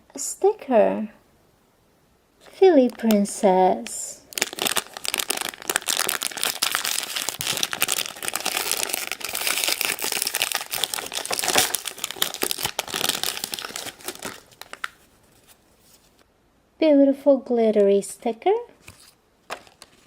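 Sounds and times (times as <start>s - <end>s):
toy packaging tearing and rustling: 2.8s - 16.2s.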